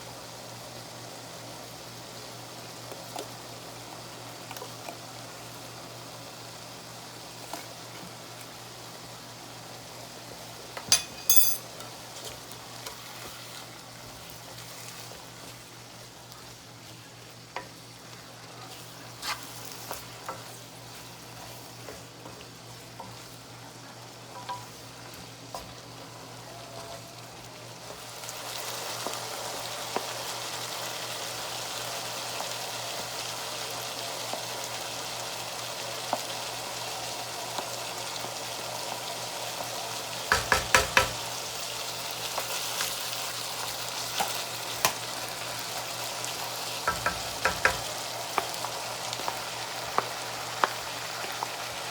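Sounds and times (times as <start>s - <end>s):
food sizzling in a frying pan: 0.0s - 51.9s
utensil knocking against pan: 40.3s - 41.2s, 46.9s - 47.9s.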